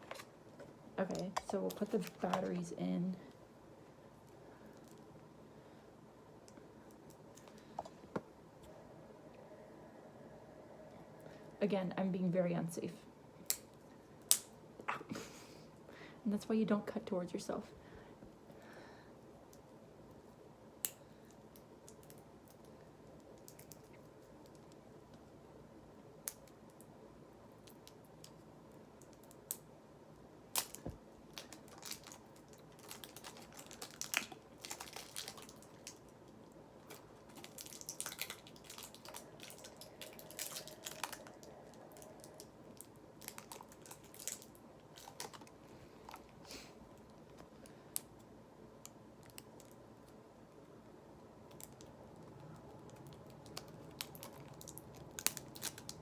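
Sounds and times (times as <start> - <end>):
plastic packaging crinkling: 0.0 - 2.8, 30.6 - 48.1, 51.5 - 56.0.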